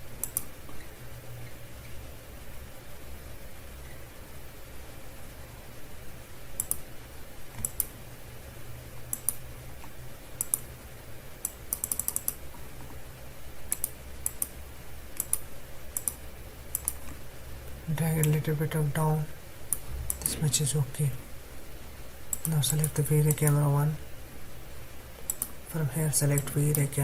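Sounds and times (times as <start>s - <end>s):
steady low hum: 0.0s - 27.0s
keyboard and mouse clicks: 0.2s - 0.9s, 6.6s - 6.9s, 7.5s - 8.0s, 9.1s - 10.7s, 11.4s - 13.0s, 13.7s - 14.6s, 15.2s - 17.2s, 22.3s - 23.6s, 25.2s - 25.6s.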